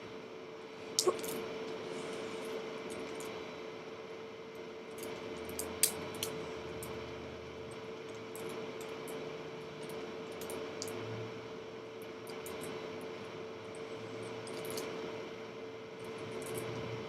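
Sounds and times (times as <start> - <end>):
steady hum: 0.0 - 17.0.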